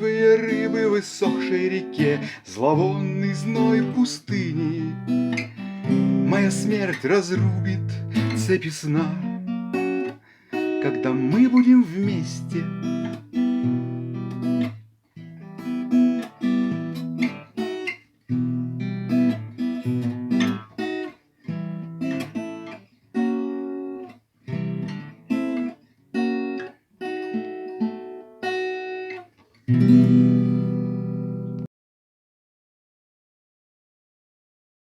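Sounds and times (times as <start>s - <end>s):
acoustic guitar strummed chords: 0.0s - 31.7s.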